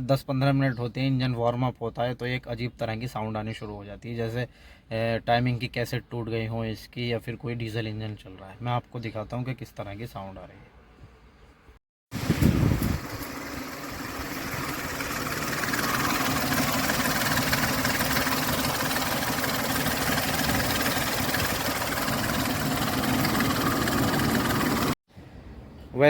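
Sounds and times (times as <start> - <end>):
engine timing noise: 12.2 - 25.0
car engine idling: 12.7 - 25.0.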